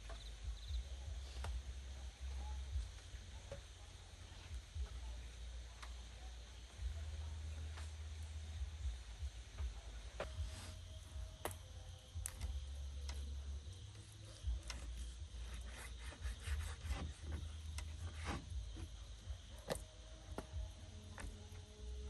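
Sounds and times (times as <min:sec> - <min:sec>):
rubbing: 0:14.1 - 0:19.1.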